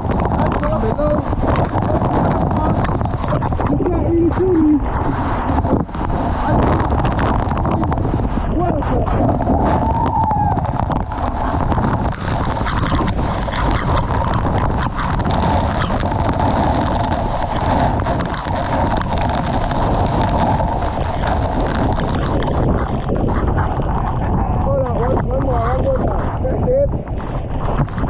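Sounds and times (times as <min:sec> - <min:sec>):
wind buffeting microphone: 0:00.0 - 0:28.0
waterfall pouring into pool: 0:05.6 - 0:23.2.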